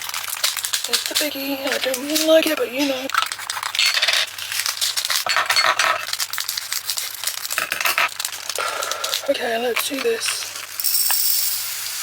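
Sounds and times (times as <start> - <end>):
plastic bag crinkling: 0.0 - 11.7
tiny beads rattling into plastic box: 9.6 - 11.8.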